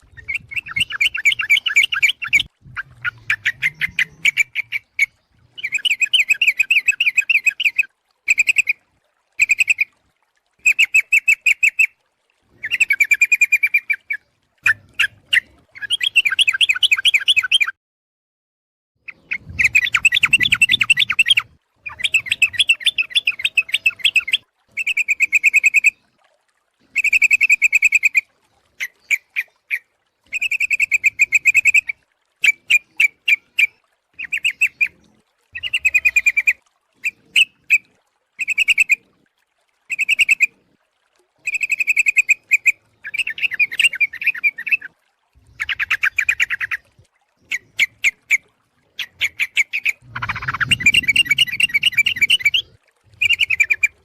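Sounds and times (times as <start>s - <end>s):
bird bubbling chatter: 0.0s - 8.8s, 19.1s - 26.0s, 35.6s - 37.8s, 41.4s - 54.0s.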